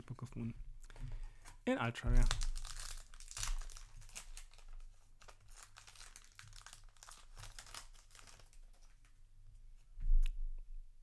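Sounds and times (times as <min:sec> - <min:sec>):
foil pack crinkling: 0:02.2 - 0:09.0.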